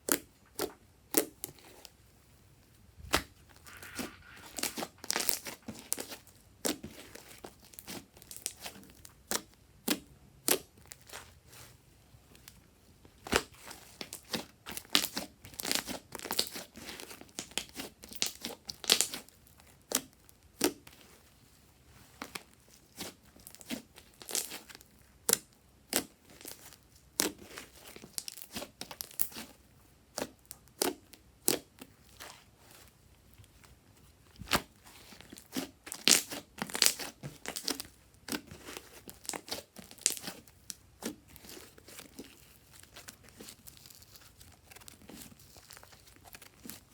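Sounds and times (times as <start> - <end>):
slime crackling and popping: 3.0 - 11.2, 13.2 - 19.3, 23.0 - 29.4, 35.4 - 46.9.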